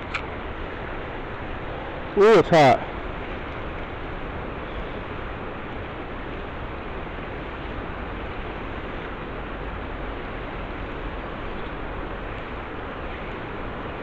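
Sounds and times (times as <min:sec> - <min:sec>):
river water rushing: 0:00.0 - 0:03.4.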